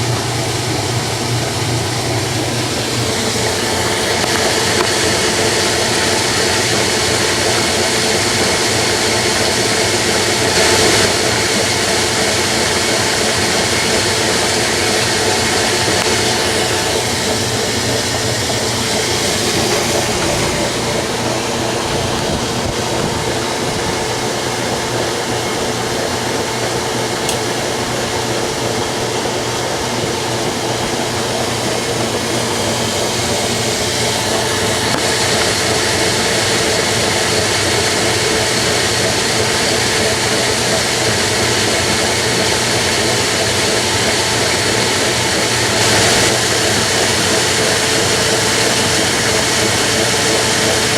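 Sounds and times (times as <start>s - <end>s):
washing machine motor whirring: 0.0s - 50.9s
high-pitched whine: 9.8s - 27.0s, 44.6s - 50.9s.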